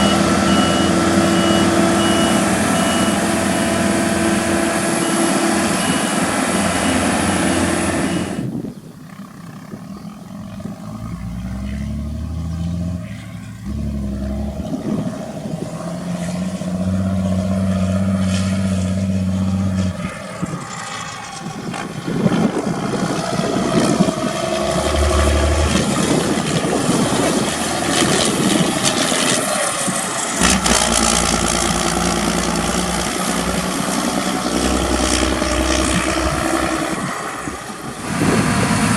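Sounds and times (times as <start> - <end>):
heavy machinery engines running: 0.0 - 38.9.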